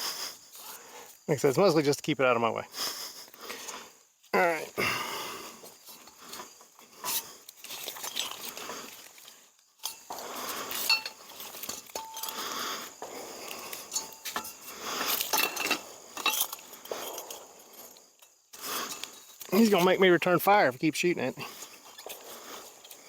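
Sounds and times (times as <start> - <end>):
metal gear clinking and rattling: 10.8 - 12.4, 13.9 - 17.5.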